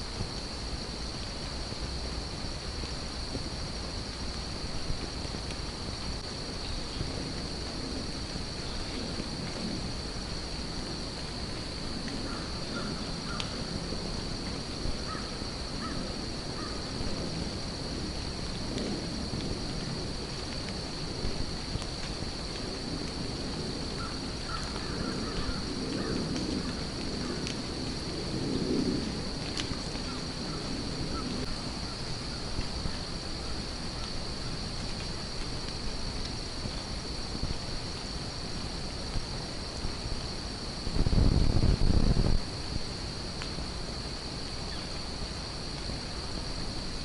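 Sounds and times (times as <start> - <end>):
low wind rumble: 0.0 - 47.0
steady high hiss: 0.0 - 47.0
steady outdoor noise: 0.0 - 47.0
distant crows cawing: 12.3 - 13.6, 15.1 - 16.0, 16.6 - 16.8, 24.0 - 27.5
light ticks: 29.4 - 30.2.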